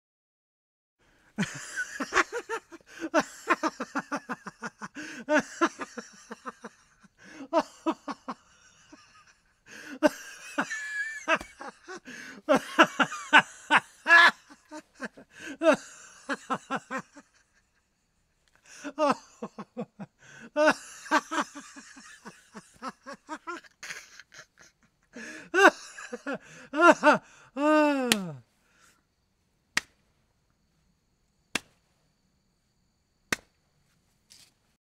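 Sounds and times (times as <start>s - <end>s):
man laughing hard: 1.4s - 18.0s, 18.6s - 28.4s.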